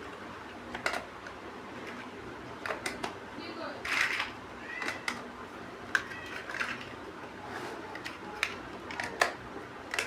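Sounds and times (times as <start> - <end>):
plastic bricks clicking: 3.8 - 5.3, 5.9 - 6.9, 7.9 - 10.0.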